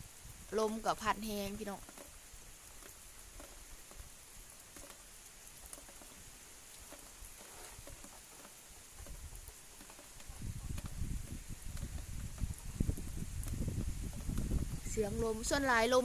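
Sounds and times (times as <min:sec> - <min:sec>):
low wind rumble: 0:00.0 - 0:04.6, 0:08.8 - 0:16.0
rain drops pattering: 0:00.0 - 0:16.0
soft hiss: 0:00.0 - 0:16.0.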